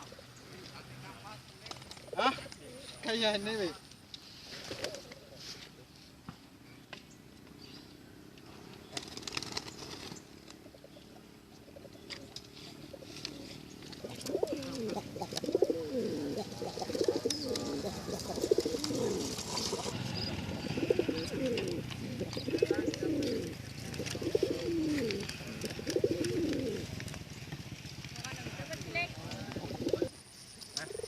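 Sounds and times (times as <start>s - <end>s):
pigeon cooing: 1.9s - 3.0s, 4.6s - 5.9s, 10.5s - 27.2s, 29.3s - 30.1s.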